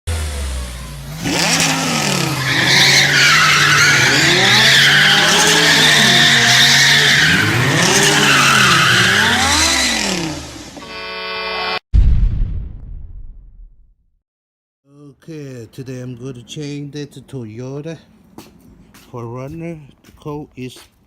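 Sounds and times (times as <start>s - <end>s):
car engines revving: 0.1s - 10.9s
tyres squealing: 1.4s - 9.9s.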